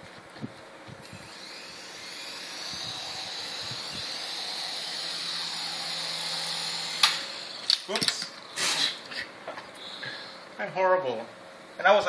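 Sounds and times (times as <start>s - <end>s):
toy helicopter rotors whining: 1.1s - 7.9s.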